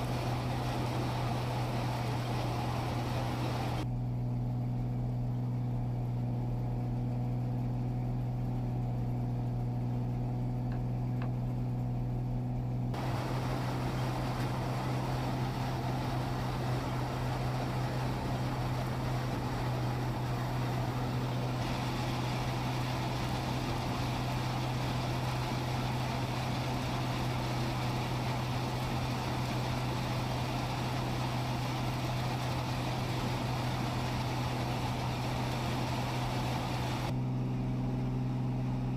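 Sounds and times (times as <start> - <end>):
motor humming: 0.0 - 3.8, 13.0 - 37.2
noisy hiss: 0.0 - 3.8, 13.0 - 37.1.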